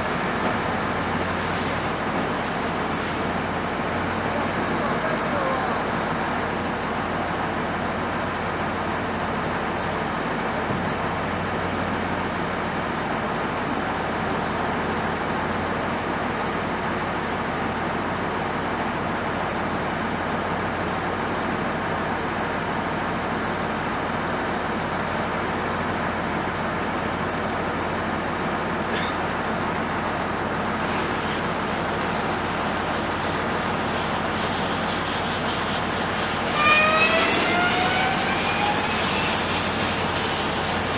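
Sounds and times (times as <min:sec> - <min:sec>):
heavy machinery engine drone: 0:00.0 - 0:40.9.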